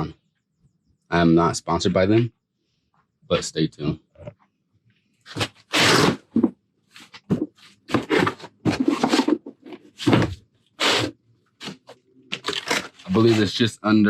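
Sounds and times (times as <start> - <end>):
packaging being torn open: 12.3 - 13.4.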